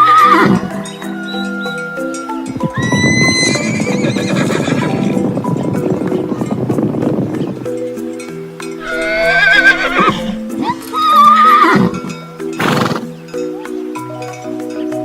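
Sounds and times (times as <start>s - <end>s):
horse whinnying: 0.0s - 0.6s, 2.8s - 4.9s, 8.8s - 11.9s
hooves clattering: 0.0s - 13.2s
background music: 0.0s - 15.0s.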